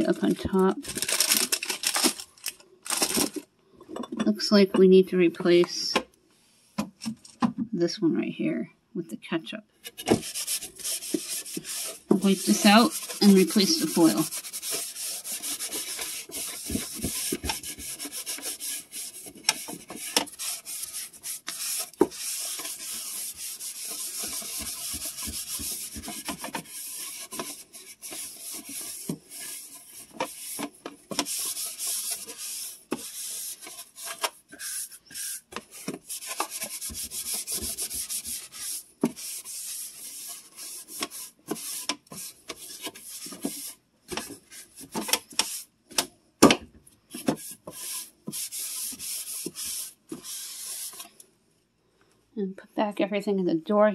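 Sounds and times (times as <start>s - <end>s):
rubbing and scraping: 0.0s - 4.6s, 9.8s - 45.8s, 47.1s - 51.2s
aluminium foil handled: 0.8s - 3.4s.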